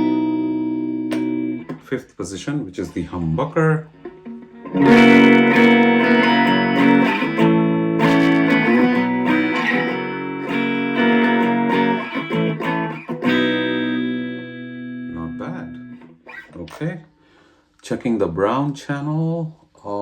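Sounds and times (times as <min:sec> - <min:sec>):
electric guitar chords strummed: 0:00.0 - 0:01.9, 0:03.8 - 0:16.8.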